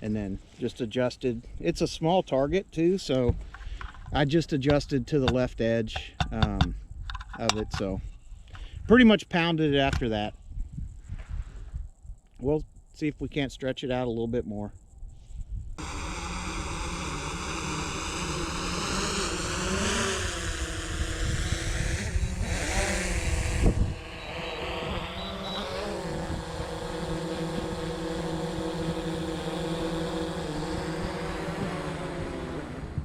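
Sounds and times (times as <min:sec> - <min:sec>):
vehicle engine running: 0:15.8 - 0:33.0.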